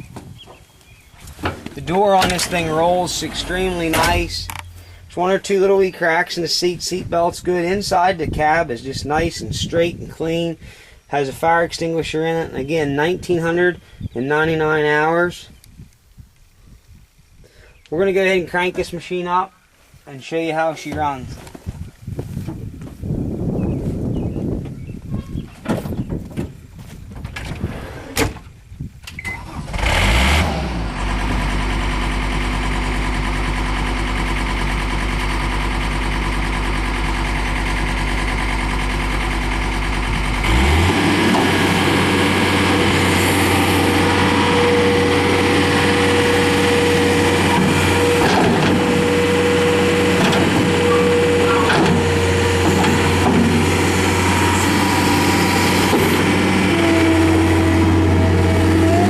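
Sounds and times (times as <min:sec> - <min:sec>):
diesel engine starting and running: 0:01.3 - 0:09.6, 0:29.1 - 0:59.0.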